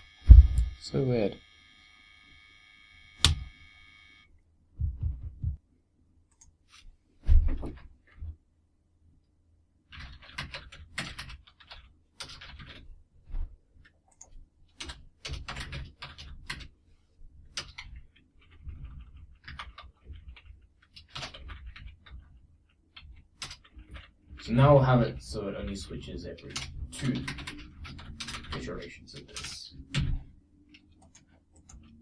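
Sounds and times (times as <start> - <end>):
typing on computer keyboard: 9.9 - 12.8, 14.1 - 16.7, 17.5 - 24.2, 26.5 - 32.0.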